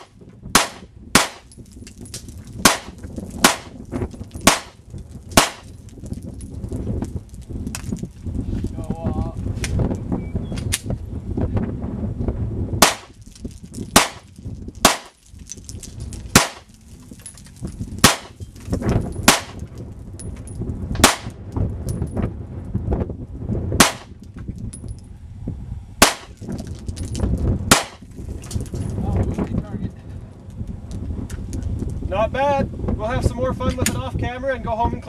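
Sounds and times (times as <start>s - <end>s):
pistol shots: 0.0s - 1.5s, 2.6s - 3.8s, 4.4s - 4.8s, 5.4s - 5.7s, 12.8s - 13.2s, 13.9s - 15.2s, 16.3s - 16.7s, 18.0s - 18.4s, 19.2s - 19.6s, 21.0s - 21.4s, 23.8s - 24.2s, 26.0s - 26.4s, 27.7s - 28.0s
low rumble: 0.0s - 33.6s.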